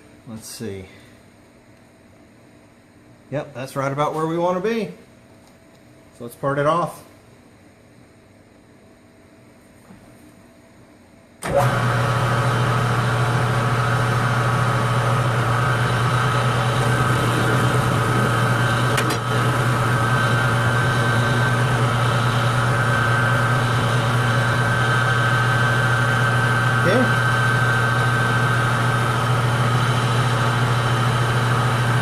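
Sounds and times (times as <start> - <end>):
metal lathe running: 11.4 - 32.0.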